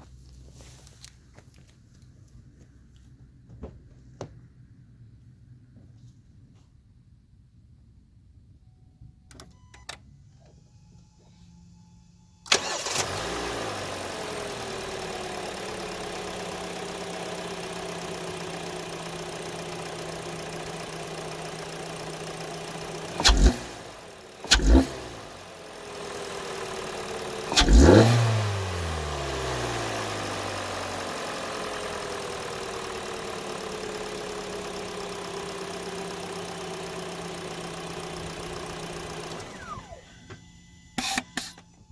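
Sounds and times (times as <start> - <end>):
car engine starting and idling: 8.6 - 41.9
car engine revving: 12.5 - 40.0.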